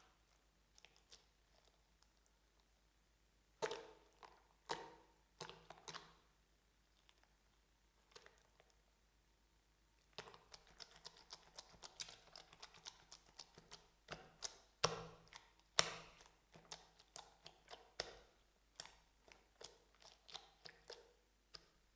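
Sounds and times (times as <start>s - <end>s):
slime clicking and popping: 14.1s - 18.2s.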